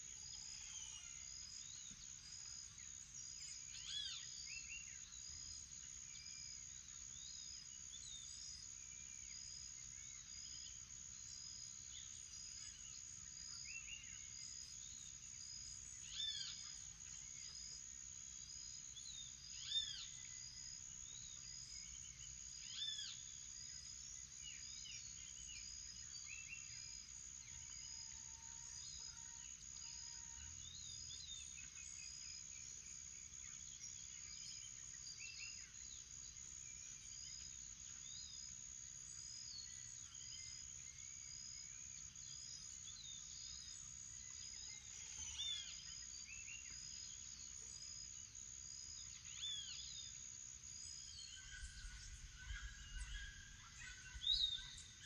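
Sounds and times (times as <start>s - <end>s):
bird calls: 51.1s - 55.0s.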